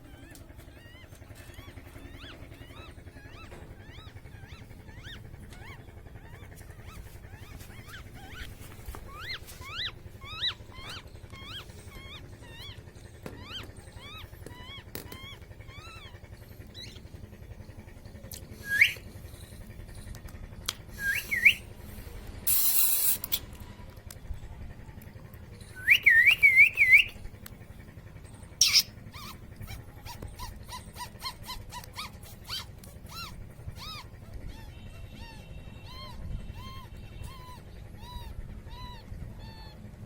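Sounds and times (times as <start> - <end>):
short hiss: 22.5 - 23.3
soft chirps: 28.6 - 29.3.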